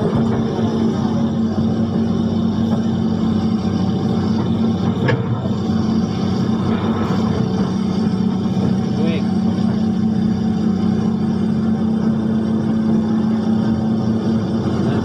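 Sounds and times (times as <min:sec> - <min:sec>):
engine running steadily: 0:00.0 - 0:15.0.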